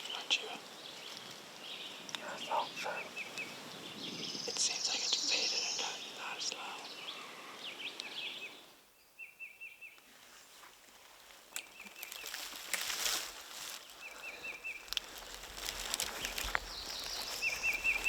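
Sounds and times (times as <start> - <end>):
songbird singing: 0.0 - 18.0
faint rustling and clicks: 10.0 - 18.0.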